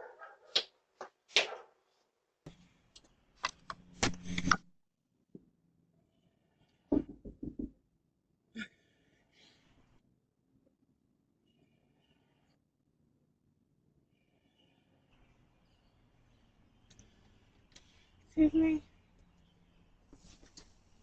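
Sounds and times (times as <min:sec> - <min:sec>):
clicks and rustling handling noise: 0:02.5 - 0:04.7
knocks on a door: 0:06.9 - 0:07.7.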